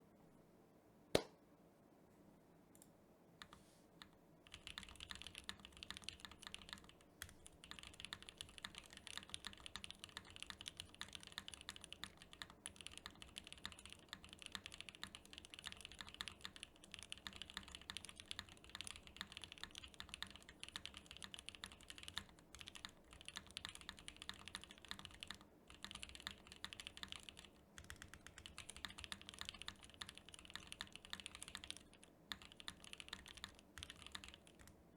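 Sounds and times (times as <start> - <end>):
mechanical keyboard typing: 4.5 - 34.8.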